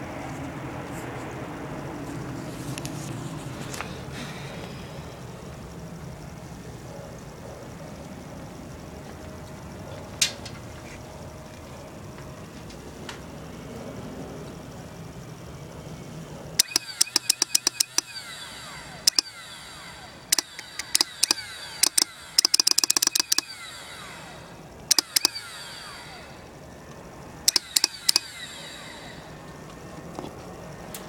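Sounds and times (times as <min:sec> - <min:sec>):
motorcycle starter clicking: 0:16.6 - 0:19.4, 0:20.3 - 0:23.6, 0:24.9 - 0:25.6, 0:27.5 - 0:28.5.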